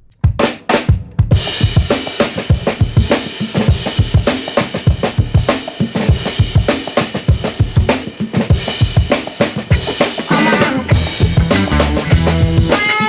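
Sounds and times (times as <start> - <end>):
drum kit kick and snare beat: 0.0 - 13.0
background music: 10.2 - 13.0.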